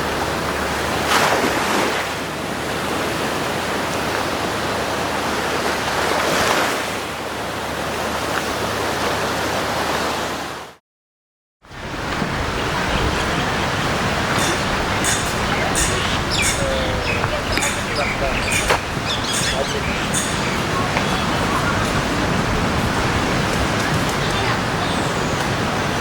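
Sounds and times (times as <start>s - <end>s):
waves breaking on beach: 0.0s - 10.8s, 11.7s - 26.0s.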